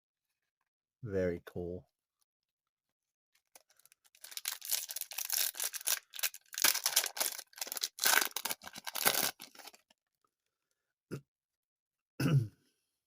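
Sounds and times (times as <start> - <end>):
wrapper tearing and crinkling: 3.6 - 9.9.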